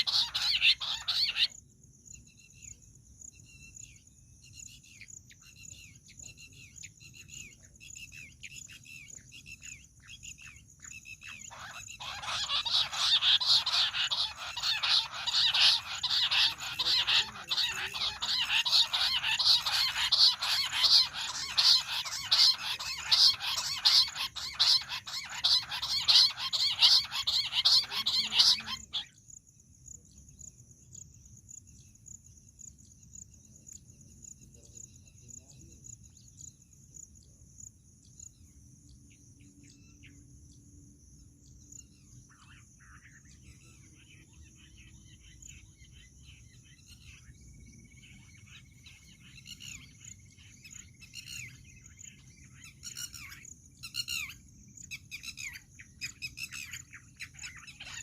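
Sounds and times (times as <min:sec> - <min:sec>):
quail rapid chattering call: 0:00.0 - 0:01.6, 0:11.2 - 0:29.2, 0:52.5 - 0:58.0
faint bird chirps: 0:00.0 - 0:58.0
high cricket trill: 0:00.0 - 0:58.0.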